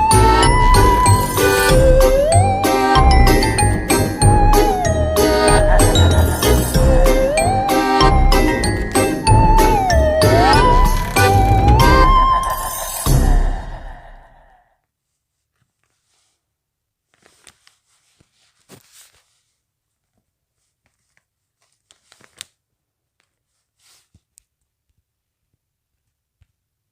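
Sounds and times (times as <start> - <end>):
background music: 0.0 - 14.4
stickers crinkling and rustling: 17.0 - 24.7.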